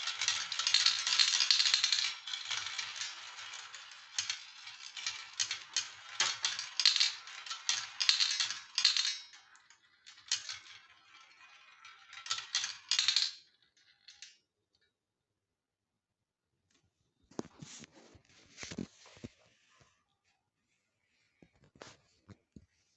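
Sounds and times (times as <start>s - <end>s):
marbles rolling and clattering: 0.0s - 14.4s.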